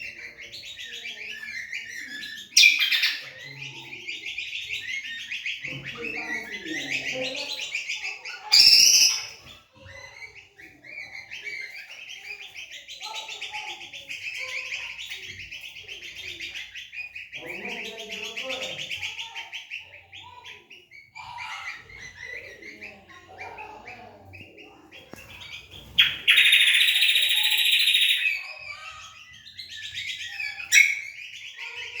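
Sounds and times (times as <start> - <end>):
bird twittering song: 0.0 - 32.0
sharp bird chirps: 25.9 - 28.6.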